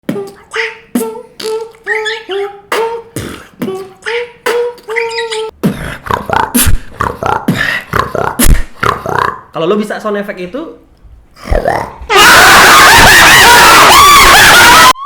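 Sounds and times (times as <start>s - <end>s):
person beatboxing: 0.0s - 9.5s.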